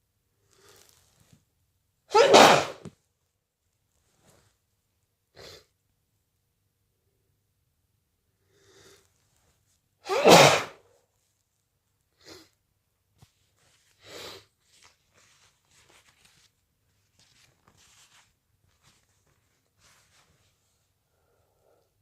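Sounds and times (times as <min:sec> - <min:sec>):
person sneezing: 0:02.1 - 0:02.9, 0:10.0 - 0:10.8
quiet short breaths: 0:20.8 - 0:22.0.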